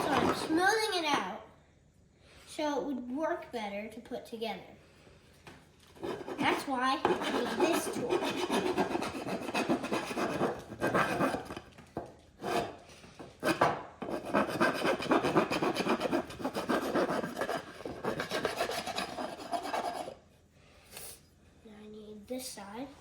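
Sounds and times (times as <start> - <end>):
rasp scraping wood: 0.0 - 0.8, 5.9 - 11.8, 12.4 - 20.2.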